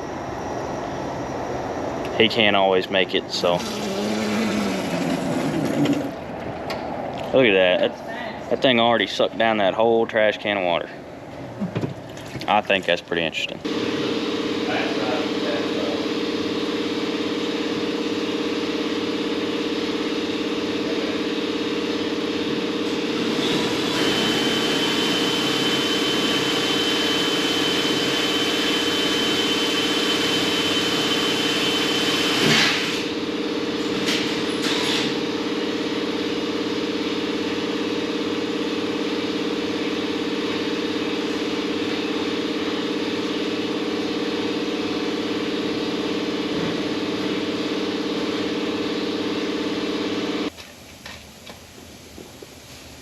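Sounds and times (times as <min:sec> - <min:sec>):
machine hum: 0:00.0 - 0:09.8, 0:13.5 - 0:50.5
electric water pump whining: 0:03.4 - 0:06.4, 0:13.7 - 0:33.8.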